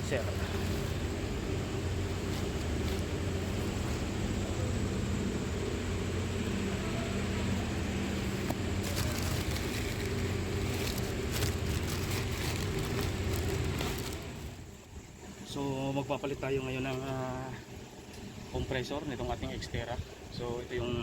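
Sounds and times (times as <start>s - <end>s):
car engine running: 0.0s - 14.8s.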